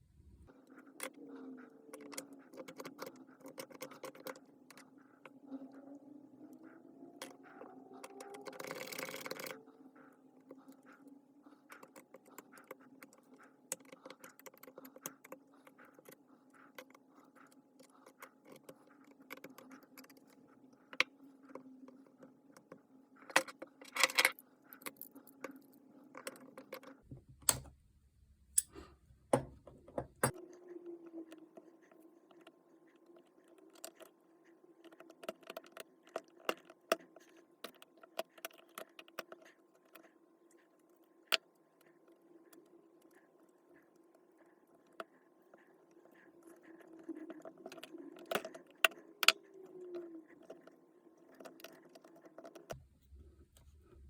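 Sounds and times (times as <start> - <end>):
faint steady hum: 0.0 - 54.0.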